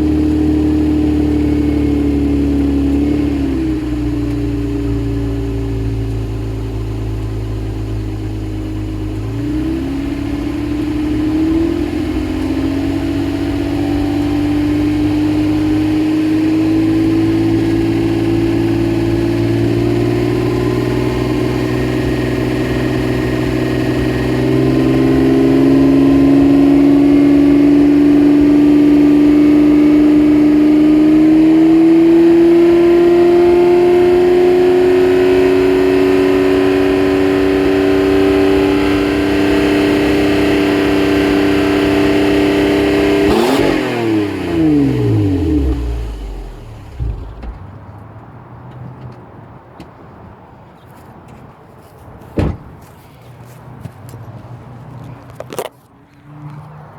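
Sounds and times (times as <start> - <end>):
car engine revving: 0.0 - 48.0.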